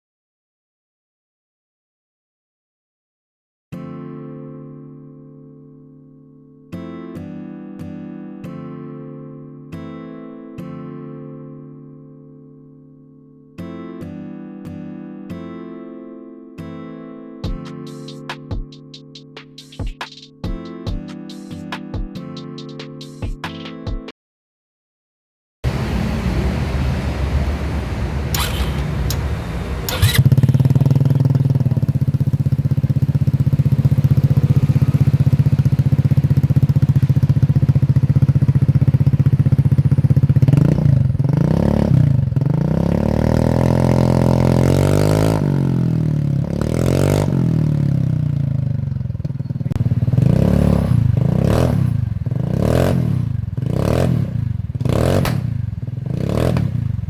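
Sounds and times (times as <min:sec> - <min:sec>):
scooter engine revving: 0:25.7 - 0:57.0
sharp clicks: 0:28.3 - 0:30.8.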